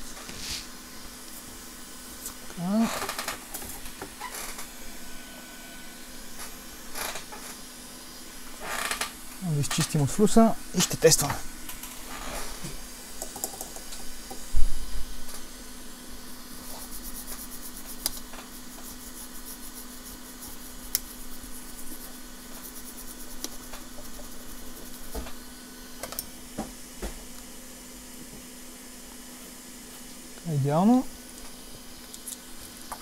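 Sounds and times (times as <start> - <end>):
steady low hum: 0.0 - 33.0
small brush scrubbing and clicking: 16.6 - 25.3.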